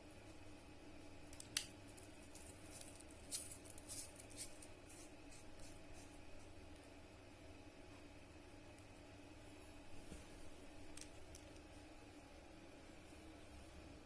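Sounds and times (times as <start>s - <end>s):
small objects clicking and rustling: 1.3s - 4.7s.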